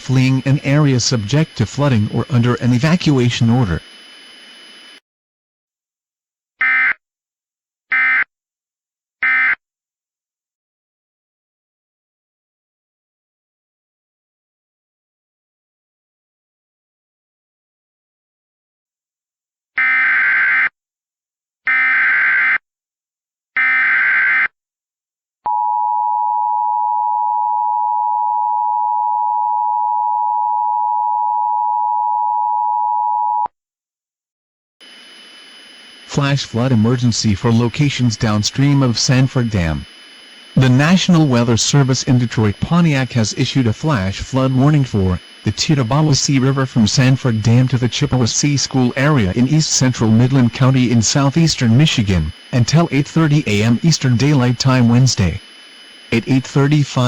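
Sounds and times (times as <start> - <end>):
buzzy digital data tones: 0.0 - 5.0, 34.8 - 57.0
two-tone attention signal: 40.5 - 55.4.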